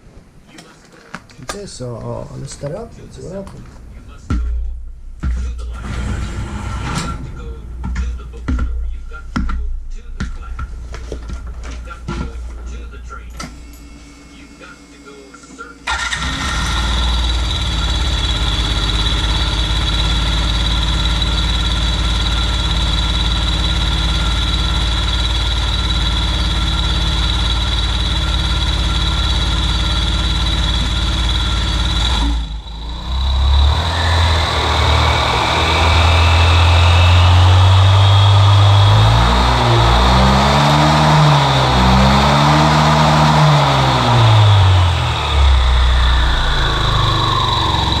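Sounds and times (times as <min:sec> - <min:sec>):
engine revving with whine: 0:15.8 - 0:48.0
scooter engine idling: 0:15.9 - 0:38.9.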